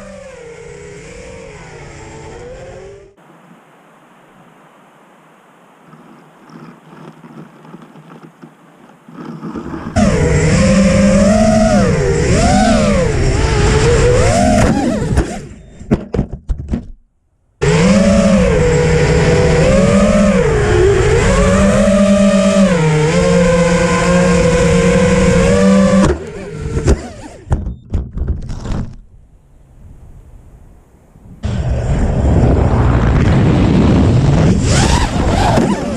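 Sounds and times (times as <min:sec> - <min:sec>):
quadcopter motors whining: 0:00.0 - 0:03.2, 0:09.2 - 0:15.8, 0:17.6 - 0:27.6, 0:34.3 - 0:35.9.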